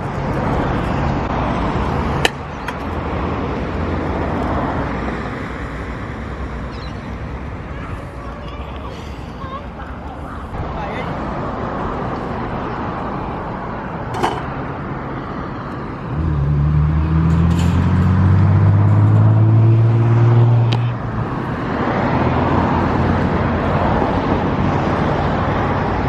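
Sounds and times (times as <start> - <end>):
traffic noise: 0.0 - 26.0
vehicle engine revving: 16.1 - 21.0.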